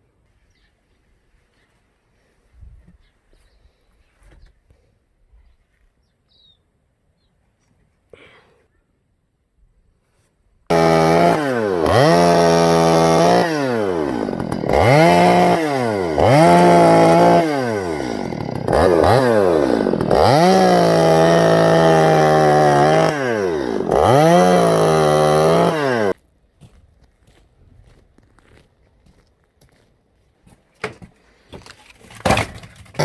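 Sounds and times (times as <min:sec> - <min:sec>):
chainsaw revving: 0:10.7 - 0:26.2.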